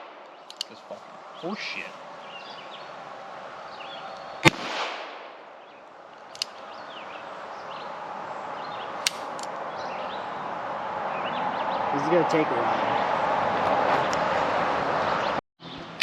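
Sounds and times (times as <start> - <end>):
revolver shots with echo: 4.4 - 5.3.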